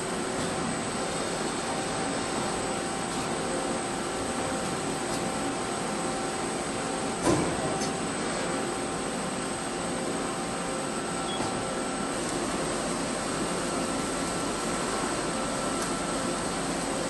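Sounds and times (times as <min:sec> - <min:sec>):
machinery humming: 0:00.0 - 0:17.0
machine clunk: 0:07.2 - 0:08.0.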